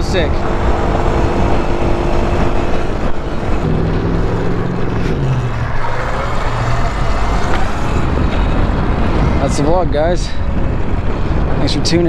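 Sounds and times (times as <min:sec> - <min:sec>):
low motor hum: 0:00.0 - 0:09.5
vehicle rumble: 0:00.0 - 0:12.0.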